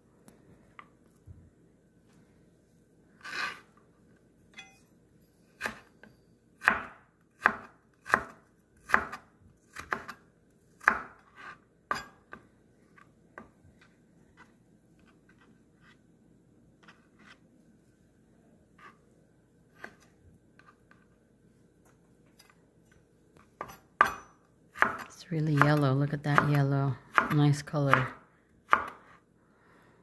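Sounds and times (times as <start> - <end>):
knife chopping on cutting board: 5.6 - 5.9, 6.6 - 10.2, 10.8 - 12.2, 23.6 - 29.2.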